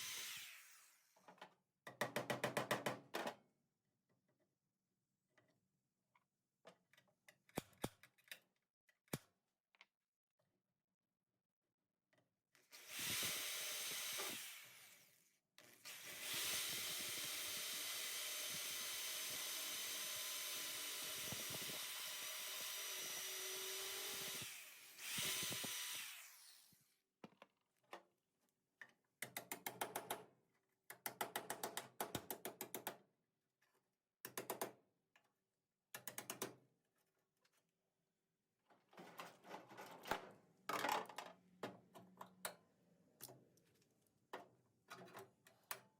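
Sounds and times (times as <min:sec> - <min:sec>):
power drill drilling metal: 0:00.0 - 0:01.2, 0:12.7 - 0:15.2, 0:15.8 - 0:26.8.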